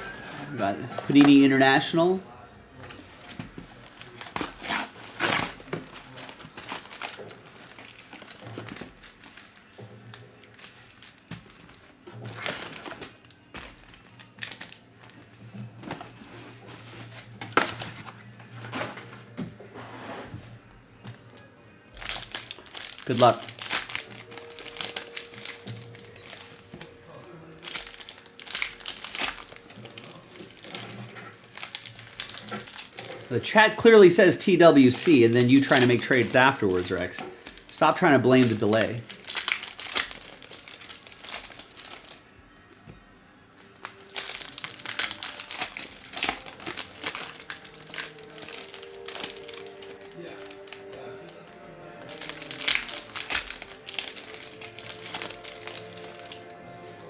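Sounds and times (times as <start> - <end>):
plastic wrappers crinkling: 0.0 - 19.8, 20.5 - 57.0.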